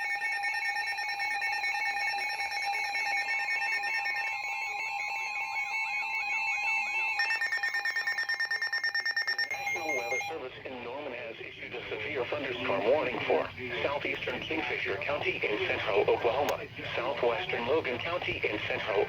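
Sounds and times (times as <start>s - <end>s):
overlapping steady alert tones: 6.2s - 10.4s
fast even beeping: 7.0s - 10.5s
warbling alert tone: 7.2s - 10.3s.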